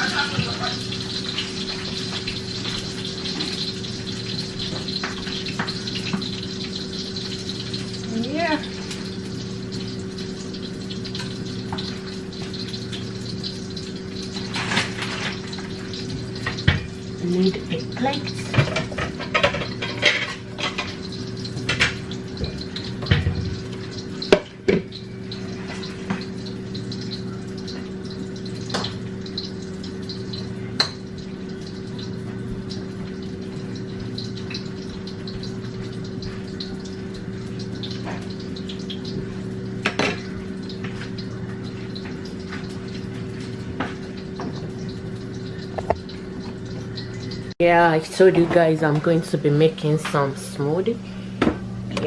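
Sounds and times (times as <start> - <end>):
fries sizzling in hot oil: 0.0 - 52.0
dishes and utensils clinking: 14.3 - 26.3.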